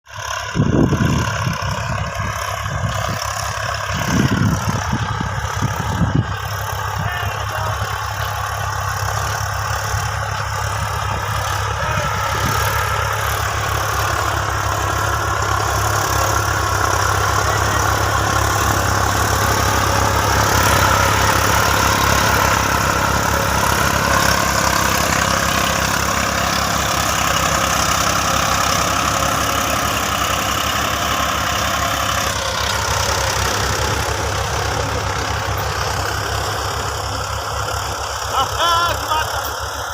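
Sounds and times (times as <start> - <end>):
tractor diesel engine running: 0.0 - 39.9.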